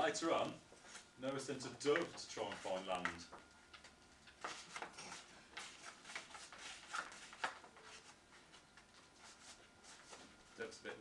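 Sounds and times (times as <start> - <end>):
paper rustling: 4.4 - 10.3.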